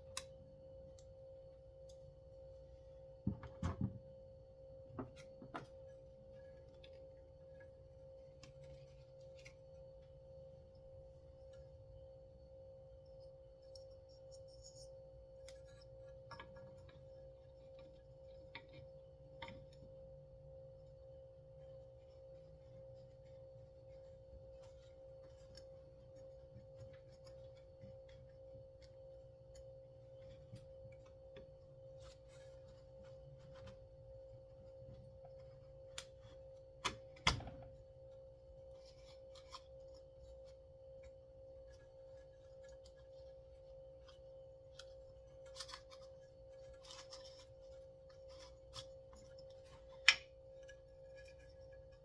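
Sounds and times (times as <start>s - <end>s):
small parts clicking and tapping: 13.2s - 20.0s.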